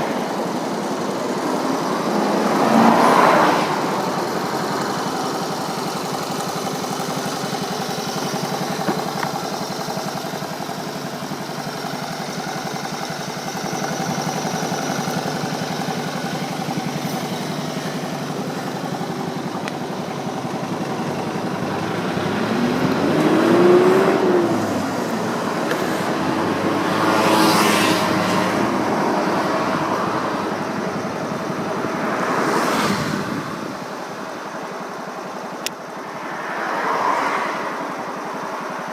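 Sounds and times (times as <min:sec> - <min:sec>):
motorcycle engine idling and revving: 0:00.0 - 0:38.9.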